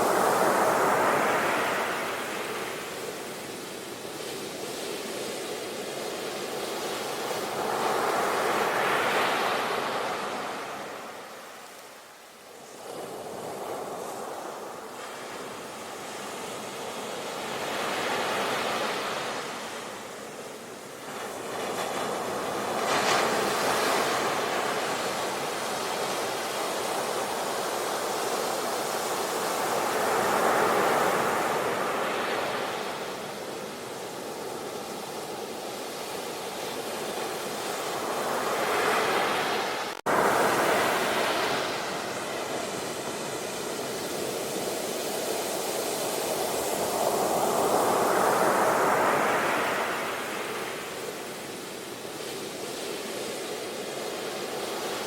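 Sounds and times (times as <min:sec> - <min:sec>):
waves breaking: 0:37.0 - 0:51.6.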